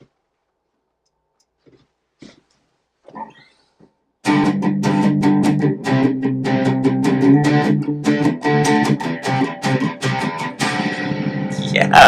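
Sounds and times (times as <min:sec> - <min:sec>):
electric guitar strumming: 0:04.2 - 0:12.0.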